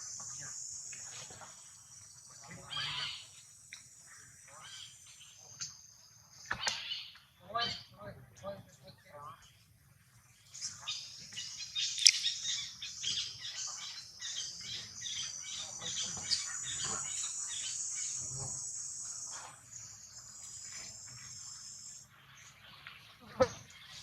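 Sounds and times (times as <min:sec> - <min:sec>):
insects chirring: 0:00.0 - 0:07.2, 0:10.6 - 0:22.1.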